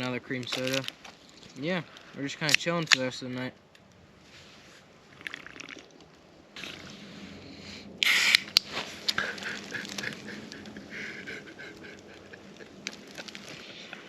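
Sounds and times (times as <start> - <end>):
soda fizzing and crackling: 5.1 - 6.0.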